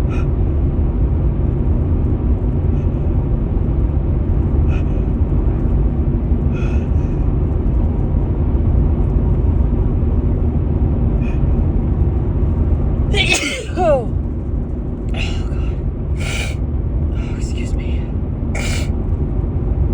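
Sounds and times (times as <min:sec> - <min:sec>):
car engine and road noise: 0:00.0 - 0:19.9.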